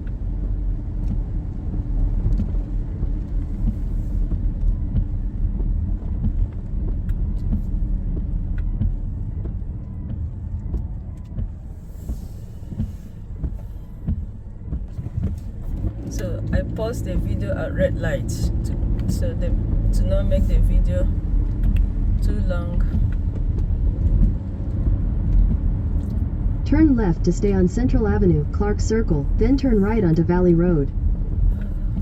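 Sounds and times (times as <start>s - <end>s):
engine and tyre rumble: 0.0s - 32.0s
light ticks: 1.0s - 17.0s, 18.5s - 26.6s.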